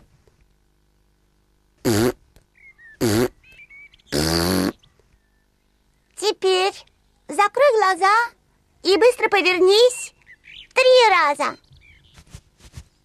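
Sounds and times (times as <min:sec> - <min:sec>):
cartoon piglet hiccupping: 0:01.8 - 0:02.2, 0:03.0 - 0:03.4, 0:04.1 - 0:04.8.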